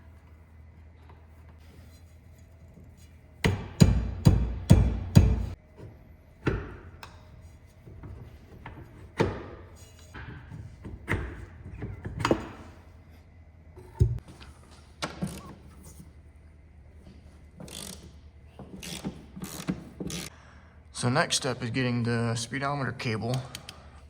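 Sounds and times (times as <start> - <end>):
hand tools knocking on metal: 3.4 - 5.6.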